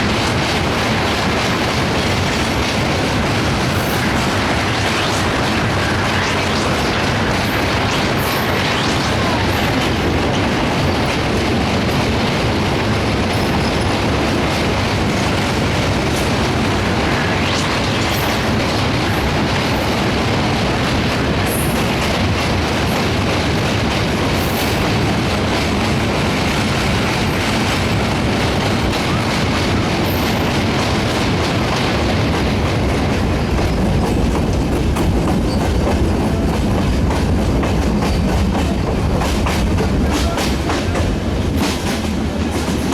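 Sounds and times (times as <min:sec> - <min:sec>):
train wheels clattering on rails: 0:00.0 - 0:42.9.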